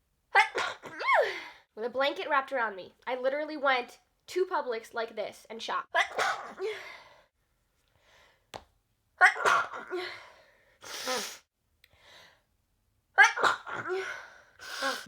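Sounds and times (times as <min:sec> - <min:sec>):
woman sneezing: 0:00.4 - 0:01.4, 0:06.0 - 0:06.8, 0:09.2 - 0:10.2, 0:10.8 - 0:11.4, 0:13.2 - 0:15.0
sharp breathy burst: 0:10.8 - 0:12.4, 0:14.6 - 0:15.0.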